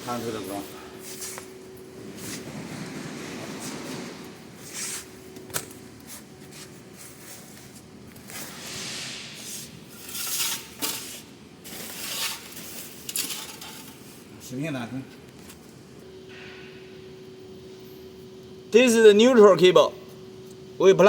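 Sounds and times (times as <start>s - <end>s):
cable rustling and scraping: 0.1s - 14.2s.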